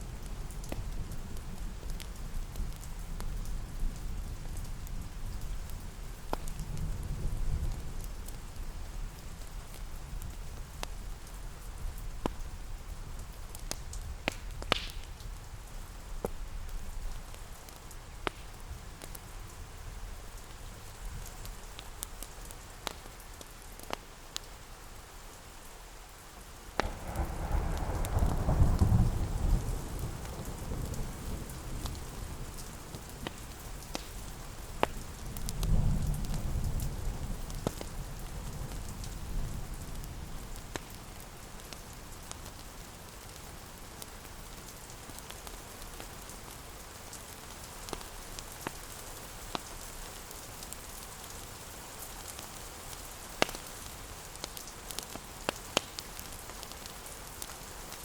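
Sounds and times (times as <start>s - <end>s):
steady rain: 0.0s - 58.0s
fireplace crackling: 16.2s - 24.6s, 40.4s - 58.0s
thunder rumbling: 26.8s - 32.6s.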